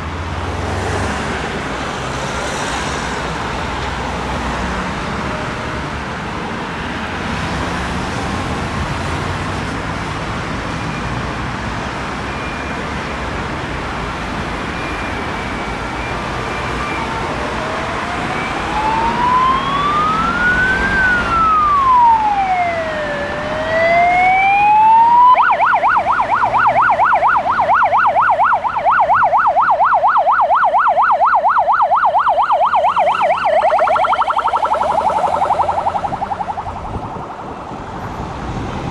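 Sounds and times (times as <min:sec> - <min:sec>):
road traffic: 0:00.0 - 0:38.9
emergency siren wailing and yelping: 0:14.2 - 0:38.2.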